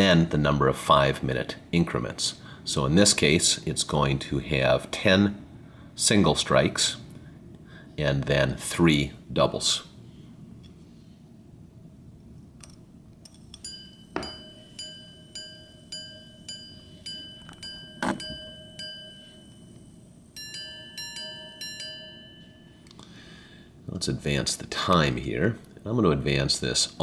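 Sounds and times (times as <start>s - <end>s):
pocket watch chiming on gongs: 13.2s - 23.5s.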